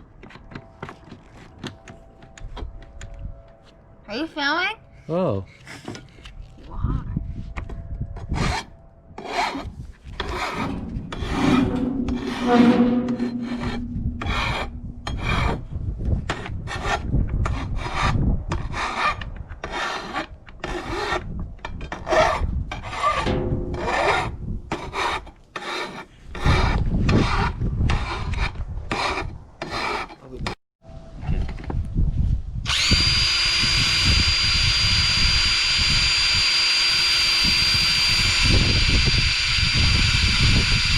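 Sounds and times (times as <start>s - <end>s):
hand file rasping on metal: 8.3s - 15.6s, 16.3s - 21.3s, 22.0s - 30.2s
high mechanical whine: 10.4s - 16.0s.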